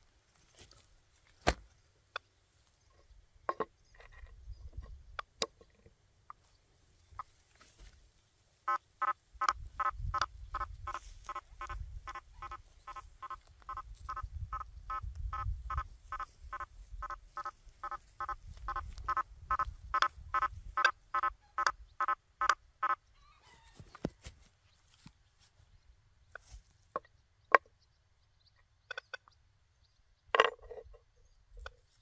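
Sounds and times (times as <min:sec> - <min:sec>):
metal detector fast beeps: 0:10.6 - 0:21.3.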